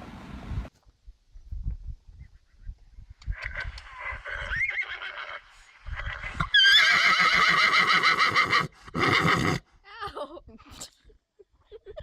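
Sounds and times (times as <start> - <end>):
horse whinnying: 3.3 - 9.6.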